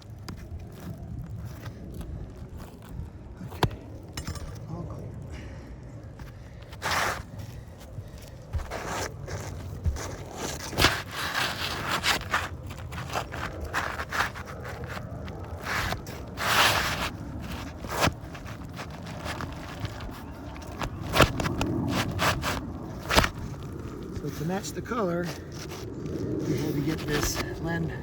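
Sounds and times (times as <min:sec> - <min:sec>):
shingles scraping and rustling: 0:06.2 - 0:28.0.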